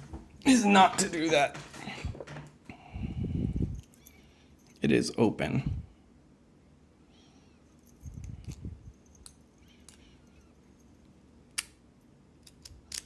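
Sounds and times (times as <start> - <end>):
small metal parts clicking: 7.8 - 10.6, 12.4 - 13.0.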